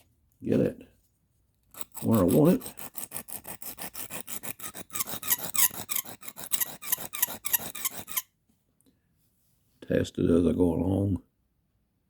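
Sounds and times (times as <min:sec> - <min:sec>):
knife scraping on sharpening stone: 0:01.7 - 0:08.3.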